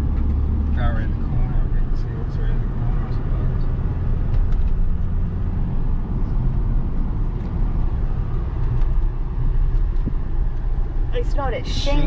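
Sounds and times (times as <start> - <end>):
car engine and tyre rumble: 0.0 - 12.0.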